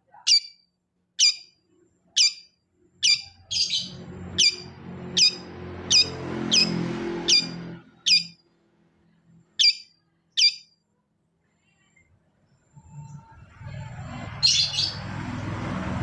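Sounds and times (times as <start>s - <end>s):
shrike sharp calls: 2.2s - 8.4s, 9.6s - 10.7s.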